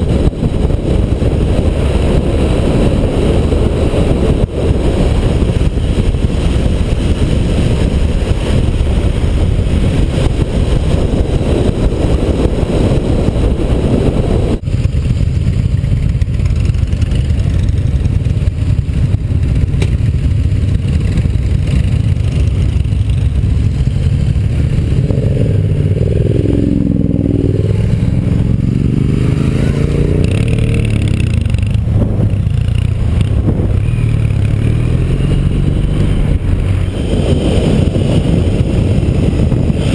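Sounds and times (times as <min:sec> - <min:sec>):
motorcycle engine rumble: 0:00.0 - 0:39.9
wind noise on microphone: 0:00.0 - 0:39.9
engine note rising and falling: 0:24.6 - 0:39.9.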